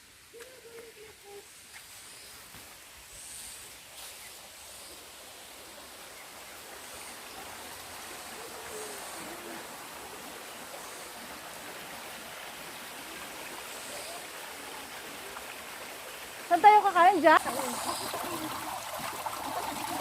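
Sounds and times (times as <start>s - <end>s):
stream rushing: 2.5s - 20.0s.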